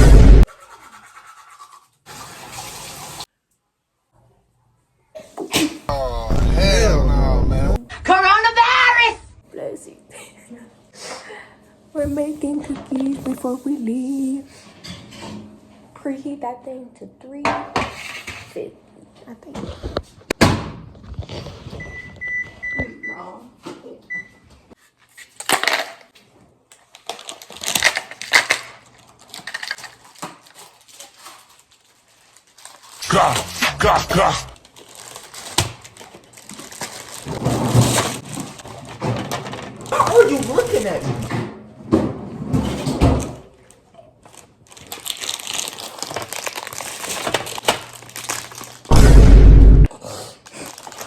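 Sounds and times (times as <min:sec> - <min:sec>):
loud burst of noise: 0:00.0 - 0:00.5, 0:05.9 - 0:07.8, 0:48.9 - 0:49.9
clattering and rustling of handling: 0:24.6 - 0:33.0, 0:34.6 - 0:45.0
plastic packaging crinkling: 0:26.7 - 0:33.0, 0:34.6 - 0:40.9, 0:44.2 - 0:48.9, 0:50.5 - 0:51.0.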